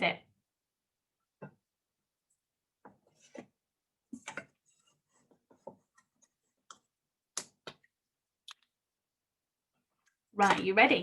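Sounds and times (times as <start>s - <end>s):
faint clicks and taps: 2.3s - 8.8s.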